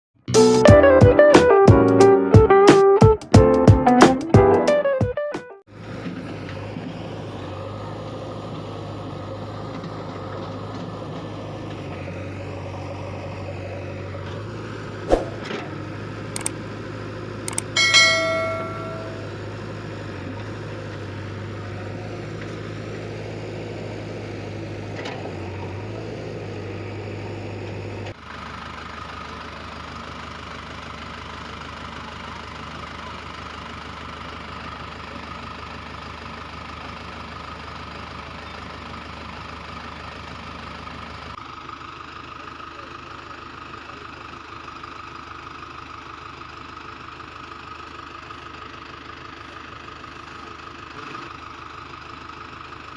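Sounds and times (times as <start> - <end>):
engine idling: 5.7 - 52.9.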